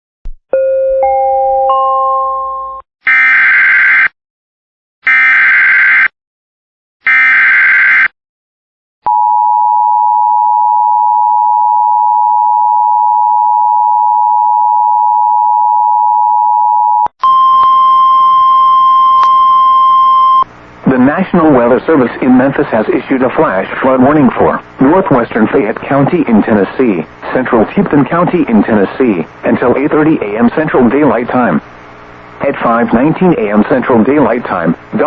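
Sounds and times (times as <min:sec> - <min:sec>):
single steady tone: 0:09.1 - 0:20.5.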